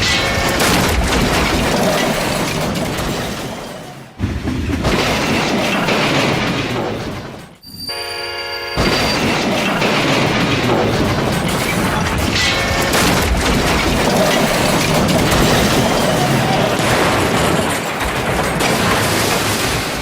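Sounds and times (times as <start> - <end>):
explosion-like booms: 0.0 - 3.5
train wreck crash: 0.0 - 20.0.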